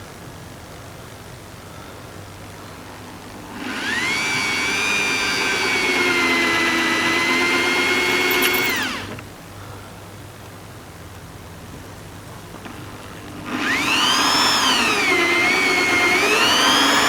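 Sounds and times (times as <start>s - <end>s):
electric drill whining: 2.7s - 9.2s, 12.6s - 17.0s.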